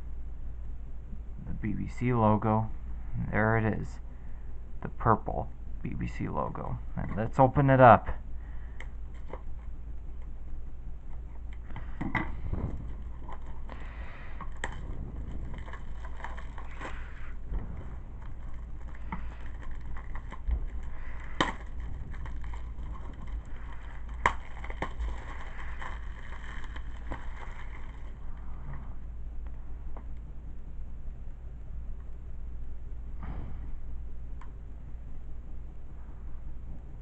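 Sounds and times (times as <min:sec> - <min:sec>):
low steady hum: 0:00.0 - 0:37.0
plastic wrapping crinkling: 0:11.2 - 0:28.7
plastic snapping: 0:14.4 - 0:28.2.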